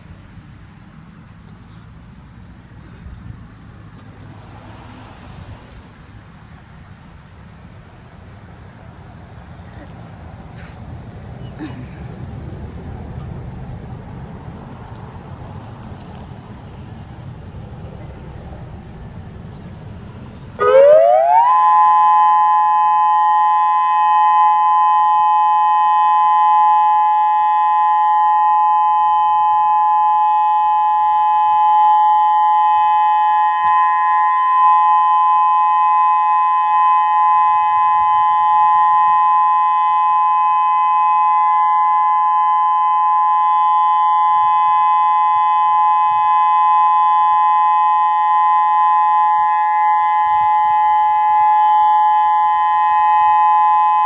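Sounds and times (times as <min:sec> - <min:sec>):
loud warning siren steady tone: 0:20.6 - 0:54.0.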